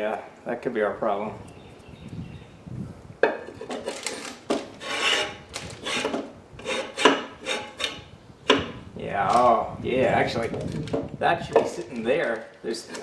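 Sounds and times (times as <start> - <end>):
metal-on-metal scrapes: 3.5 - 8.0.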